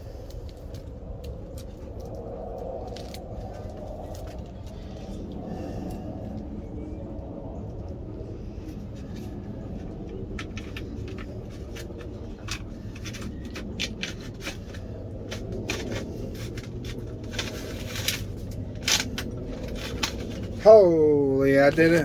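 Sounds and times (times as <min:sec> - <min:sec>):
steady low hum: 0:00.0 - 0:22.0
plastic clicks and scrapes: 0:08.8 - 0:20.6.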